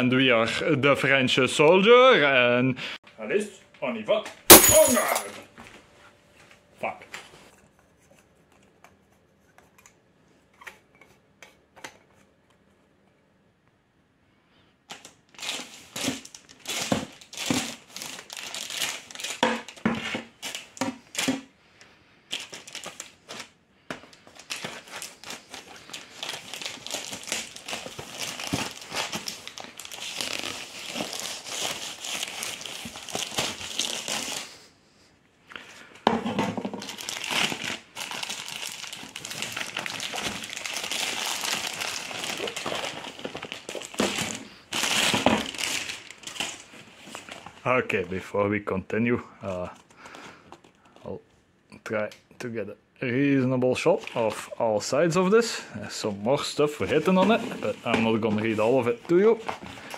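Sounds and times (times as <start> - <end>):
crinkly packaging rustling: 14.8 - 21.5, 22.3 - 34.7, 35.6 - 48.2, 55.9 - 59.9.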